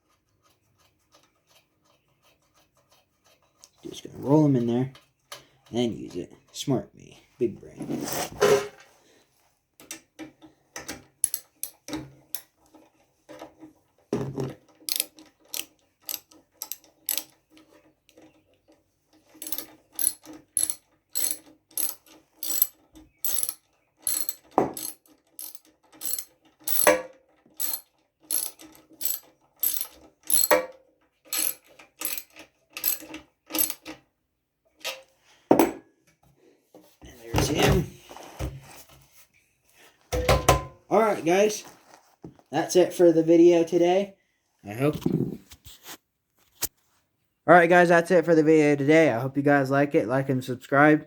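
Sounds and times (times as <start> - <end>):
ratchet wrench clicking: 14.9 - 17.4, 19.3 - 27.0, 27.6 - 30.7, 31.3 - 33.8.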